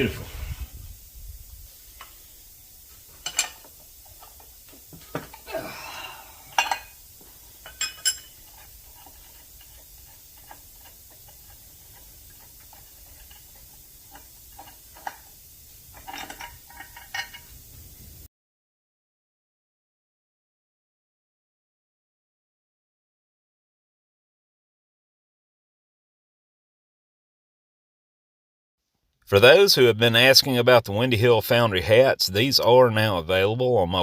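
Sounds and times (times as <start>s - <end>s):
metal tools clinking: 2.8s - 5.5s, 6.4s - 17.7s.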